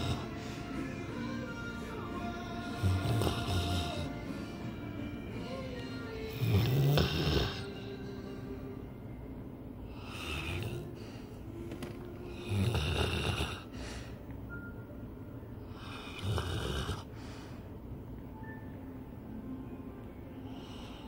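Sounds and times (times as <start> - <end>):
person snoring: 0.0 - 0.9, 1.6 - 4.8, 5.4 - 8.3, 9.9 - 11.4, 12.2 - 14.1, 15.7 - 17.3
quiet breathing: 0.0 - 9.0, 9.8 - 14.6, 15.5 - 18.1, 20.2 - 21.0.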